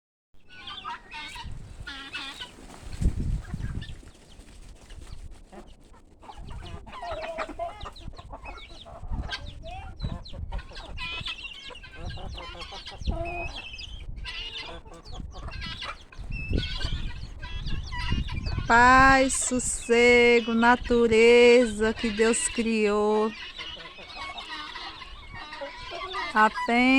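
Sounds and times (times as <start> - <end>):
guinea fowl calling: 0.4 - 2.6, 5.6 - 18.7, 23.2 - 26.9.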